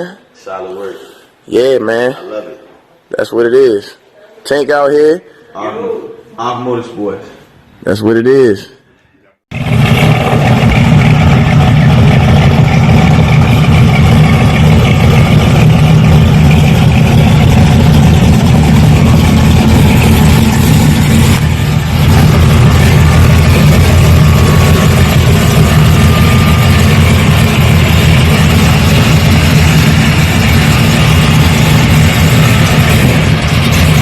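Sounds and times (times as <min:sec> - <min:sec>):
car engine running loud: 0:09.5 - 0:34.0.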